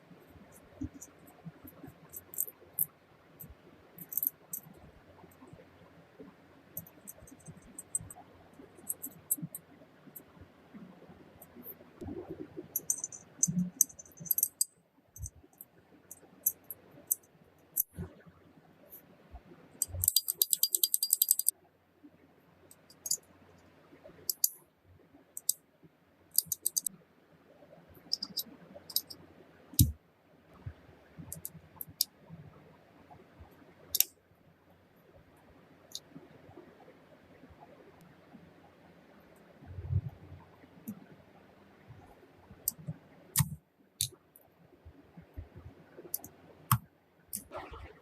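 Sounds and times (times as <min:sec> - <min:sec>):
metallic clicks of pistol parts: 0:02.1 - 0:02.9, 0:04.0 - 0:04.7, 0:12.8 - 0:15.3, 0:19.8 - 0:21.5, 0:24.3 - 0:24.6, 0:26.3 - 0:26.9, 0:28.1 - 0:29.2.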